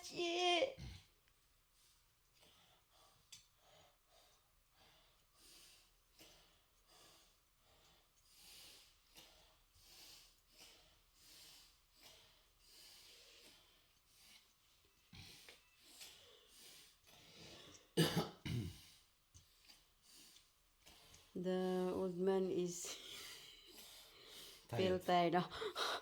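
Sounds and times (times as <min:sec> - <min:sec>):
faint breathing close to microphone: 0:00.8 - 0:18.0, 0:22.8 - 0:24.8.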